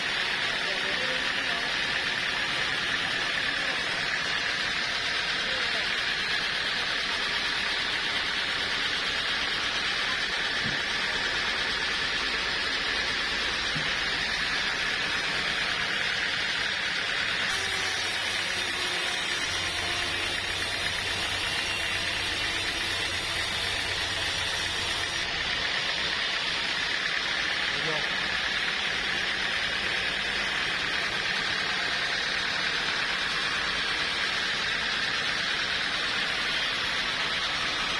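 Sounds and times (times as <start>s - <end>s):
sawmill machinery running: 0.0s - 37.9s.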